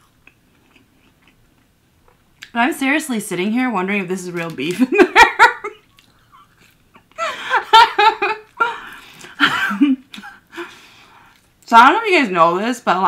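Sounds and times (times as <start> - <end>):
woman giggling: 4.8 - 10.5.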